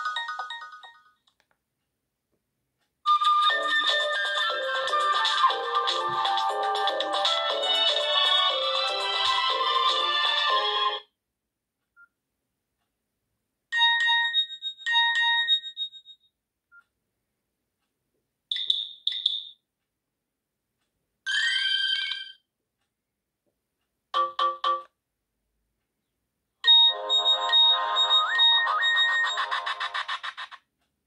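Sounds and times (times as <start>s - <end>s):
mobile phone ringtones and alert tones: 0.0s - 1.2s, 3.1s - 9.6s, 13.8s - 16.3s, 21.3s - 22.4s, 24.2s - 24.9s, 26.6s - 29.7s.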